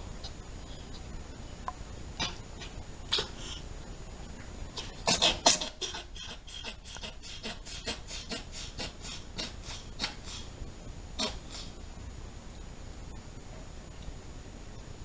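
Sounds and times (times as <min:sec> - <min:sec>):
pet reverse sneezing: 0:04.8 - 0:10.5, 0:11.2 - 0:11.8.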